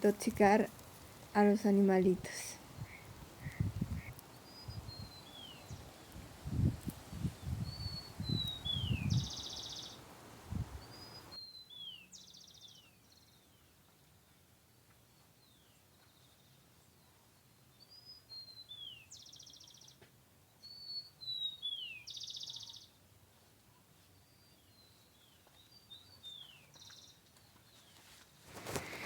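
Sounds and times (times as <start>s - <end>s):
birds whistling falling notes: 7.4s - 10.0s, 28.5s - 29.0s.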